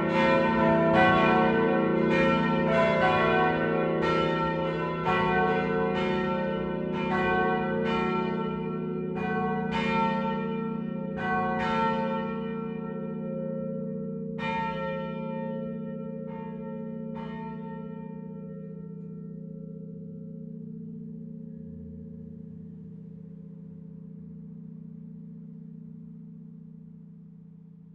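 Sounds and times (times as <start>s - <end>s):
church bells pealing: 0.0s - 21.4s.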